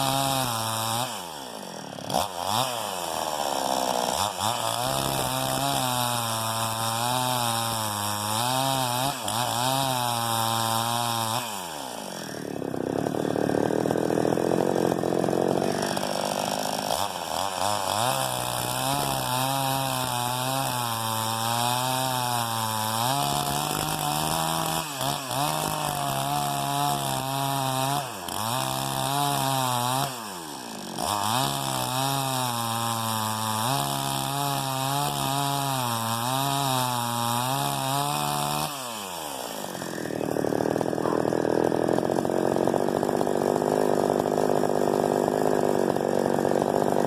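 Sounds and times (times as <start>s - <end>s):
chainsaw cutting log: 0.0s - 47.0s.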